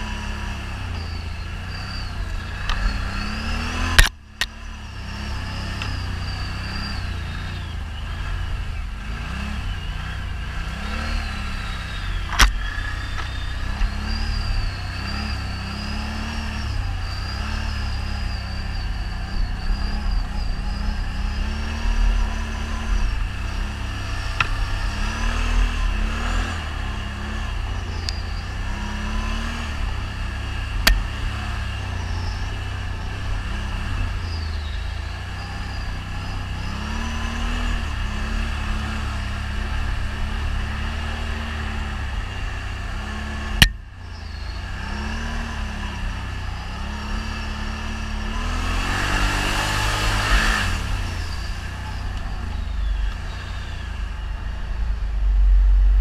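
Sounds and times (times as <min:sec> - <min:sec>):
atv engine revving: 0:00.0 - 0:56.0
high whine: 0:38.9 - 0:44.7, 0:50.2 - 0:56.0.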